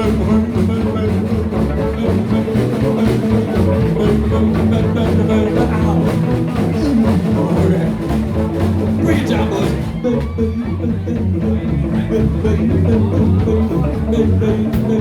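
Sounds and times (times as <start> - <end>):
drum kit beat: 0.0 - 15.0
electric guitar: 0.0 - 15.0.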